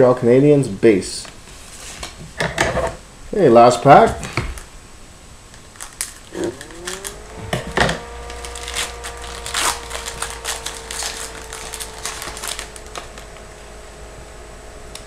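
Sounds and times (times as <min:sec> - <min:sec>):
wrapper tearing and crinkling: 0:05.5 - 0:07.4, 0:08.0 - 0:13.7.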